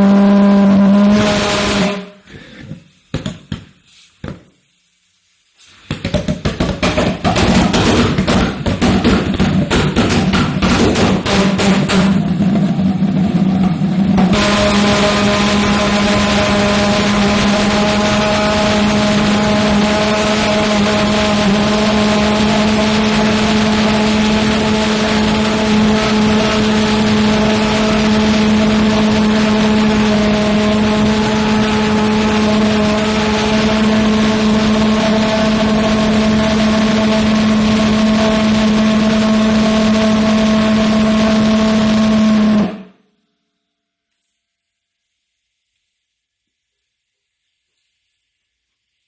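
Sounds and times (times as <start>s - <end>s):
pulsejet engine buzzing drone: 0.0s - 2.2s, 7.0s - 43.0s.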